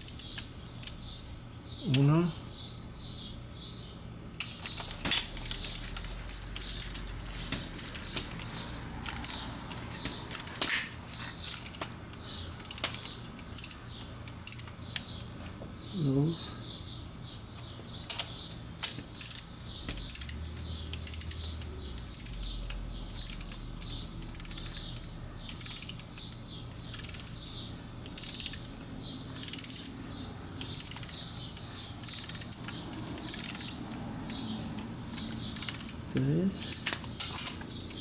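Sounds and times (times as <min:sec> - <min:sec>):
torque wrench ratchet clicking: 0:04.4 - 0:08.4, 0:09.0 - 0:09.4, 0:10.3 - 0:10.8, 0:11.4 - 0:11.9, 0:12.6 - 0:14.8, 0:18.9 - 0:30.0, 0:30.6 - 0:34.4, 0:35.1 - 0:36.0.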